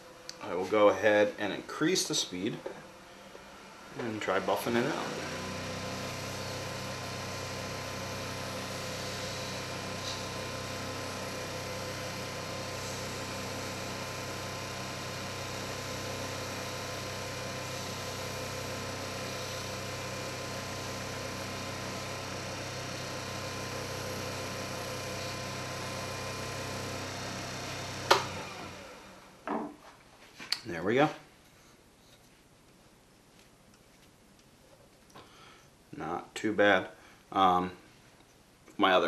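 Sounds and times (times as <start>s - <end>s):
wood lathe running: 3.4s - 29.4s
lathe switch click: 28.1s - 28.4s.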